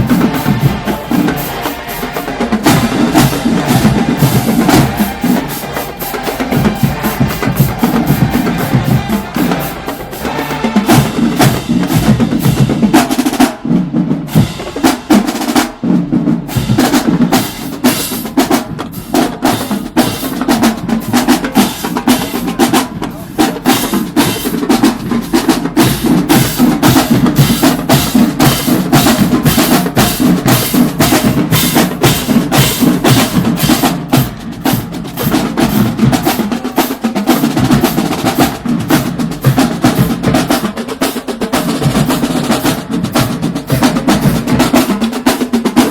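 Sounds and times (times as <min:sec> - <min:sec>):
snare drum strokes and rolls: 0:00.0 - 0:45.9.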